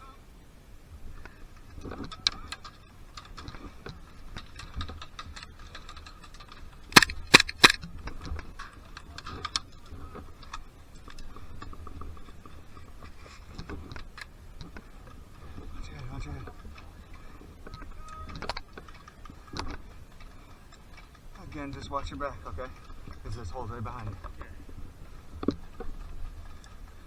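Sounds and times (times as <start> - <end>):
airsoft rifle sharp shots: 7.0 - 7.8
faint airsoft fire clicks and pops: 7.0 - 7.8.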